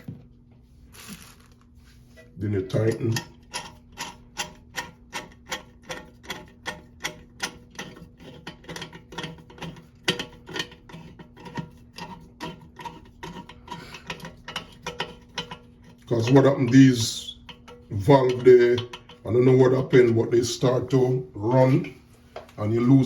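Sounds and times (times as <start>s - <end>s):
flush valve clicking: 2.8s - 12.1s.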